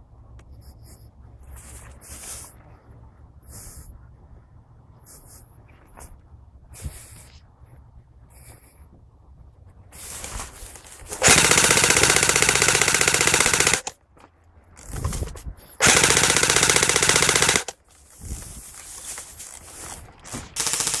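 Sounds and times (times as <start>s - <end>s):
airsoft gun full-auto bursts: 11.1s - 14.0s, 15.8s - 17.8s, 20.6s - 21.0s.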